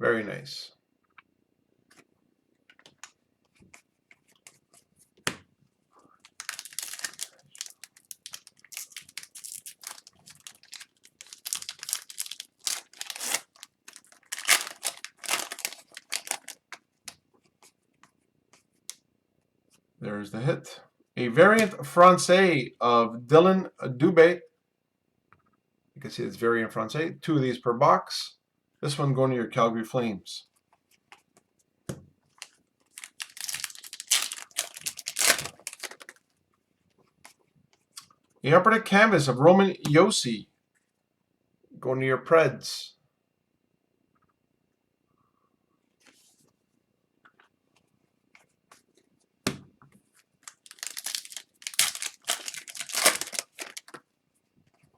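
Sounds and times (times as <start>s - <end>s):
plastic packaging crinkling: 6.2s - 16.8s, 21.6s - 21.8s, 32.4s - 36.2s, 50.4s - 54.0s.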